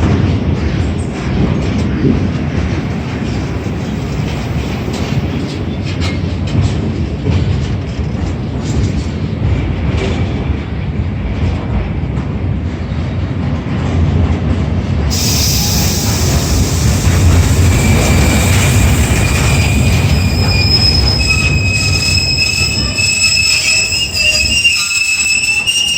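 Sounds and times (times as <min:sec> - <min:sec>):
freight train rumbling past: 0:00.9 - 0:09.7, 0:12.0 - 0:25.9
high wheel squeal: 0:02.9 - 0:05.6, 0:15.1 - 0:25.9.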